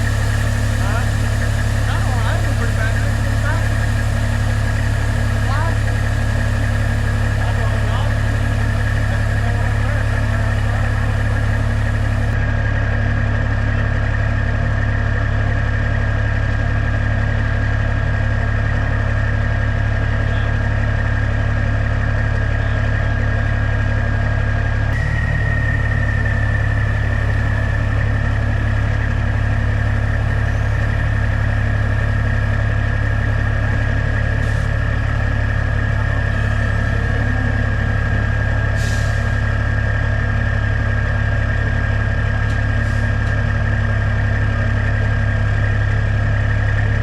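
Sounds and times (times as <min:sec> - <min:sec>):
high whine: 0:00.0 - 0:12.4, 0:25.0 - 0:40.7
diesel engine droning: 0:00.0 - 0:47.0.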